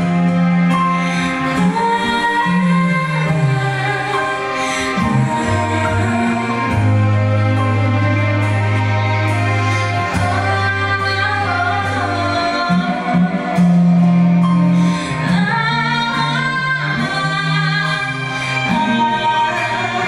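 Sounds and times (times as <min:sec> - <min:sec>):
bass line: 0:00.0 - 0:20.0
person singing: 0:00.0 - 0:20.0.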